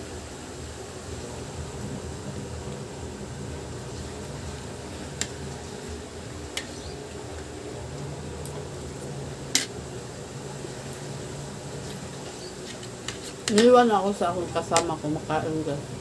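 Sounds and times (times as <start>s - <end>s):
electric fan humming: 0.0s - 16.0s.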